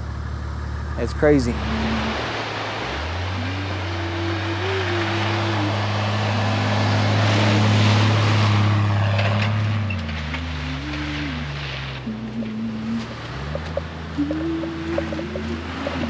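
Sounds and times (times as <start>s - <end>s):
slow background music: 3.0s - 9.3s, 10.5s - 16.0s.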